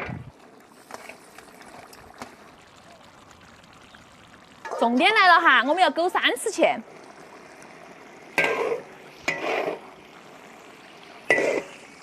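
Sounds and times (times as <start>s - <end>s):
sauce simmering in a wok: 0.0s - 12.0s.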